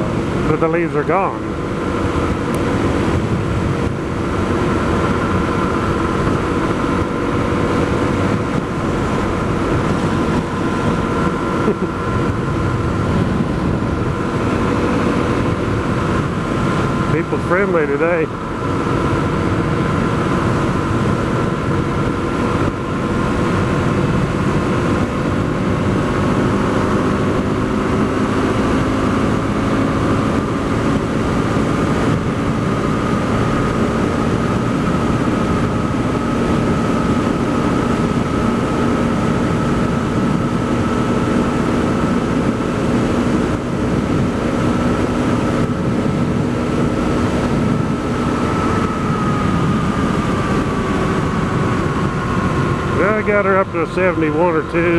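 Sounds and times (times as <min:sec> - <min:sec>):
motorcycle engine running: 0:00.0 - 0:54.9
wind and road noise: 0:00.0 - 0:54.9.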